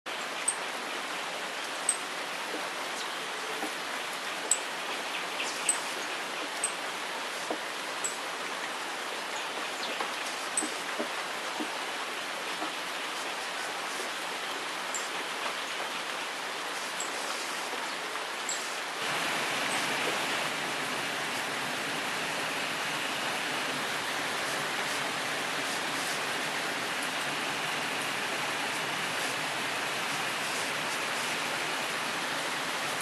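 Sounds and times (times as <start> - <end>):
water rushing over rocks: 18.3 - 33.0.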